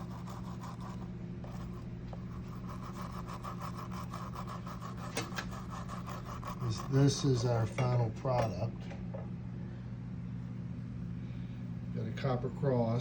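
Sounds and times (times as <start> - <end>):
small motor humming: 0.0 - 7.7.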